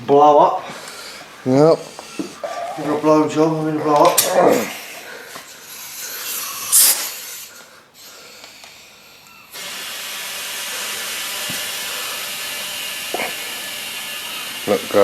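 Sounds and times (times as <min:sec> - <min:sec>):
compressed air hissing: 0:00.6 - 0:15.0.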